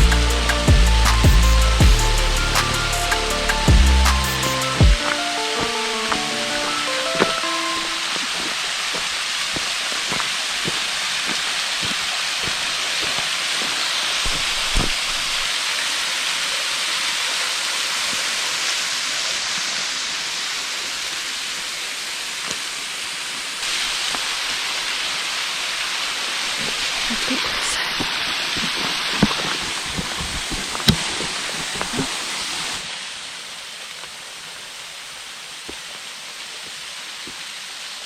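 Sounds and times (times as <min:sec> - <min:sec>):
waterfall rushing: 0:00.0 - 0:38.0
small water splashes: 0:07.2 - 0:20.2.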